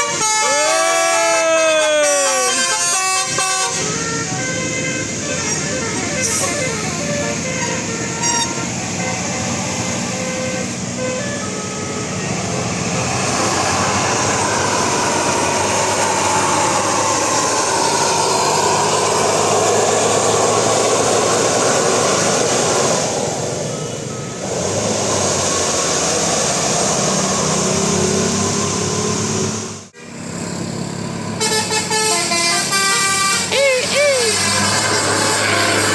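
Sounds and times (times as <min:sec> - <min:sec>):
bus horn playing a tune: 0:00.0 - 0:22.8, 0:30.0 - 0:30.3, 0:31.3 - 0:35.9
bus passing close by: 0:00.0 - 0:35.9.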